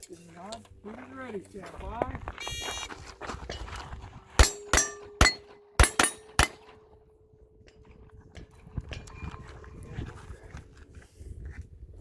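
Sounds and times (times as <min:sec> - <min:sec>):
pistol shots: 0:04.4 - 0:06.8.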